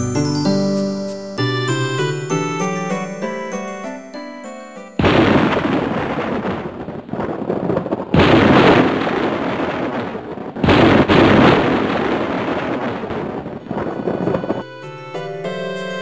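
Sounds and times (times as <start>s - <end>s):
loud rumbling blasts: 5.0s - 14.8s.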